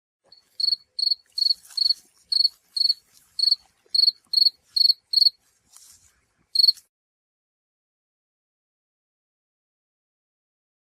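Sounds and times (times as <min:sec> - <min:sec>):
cricket chirping: 0:00.3 - 0:05.4, 0:06.6 - 0:06.8.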